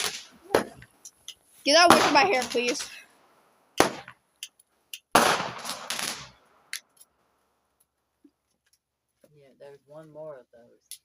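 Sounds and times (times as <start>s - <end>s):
firecrackers popping: 0.0s - 7.0s.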